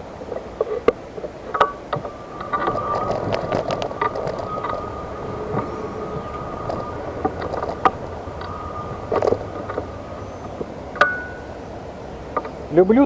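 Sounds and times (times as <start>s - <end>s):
background noise: 0.0s - 13.0s
wheelchair motor whine: 0.0s - 13.0s.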